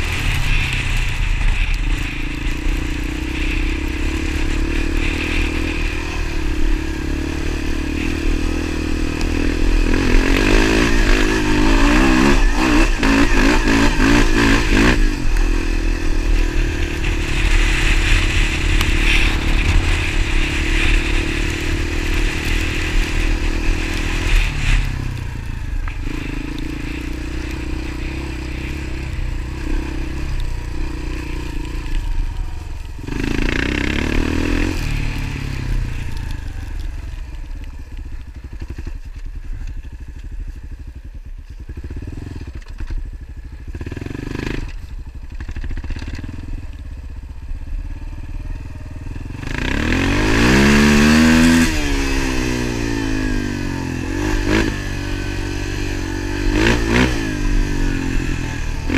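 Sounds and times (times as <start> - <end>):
engine running and revving: 0.0 - 58.9.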